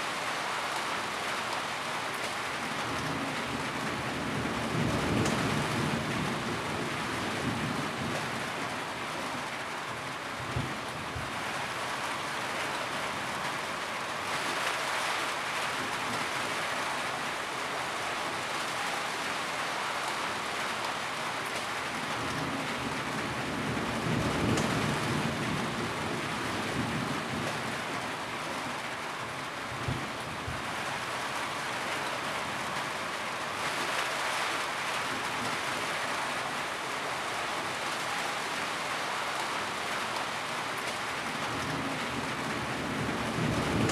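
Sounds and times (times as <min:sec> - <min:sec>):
steady rain: 0:00.0 - 0:43.9.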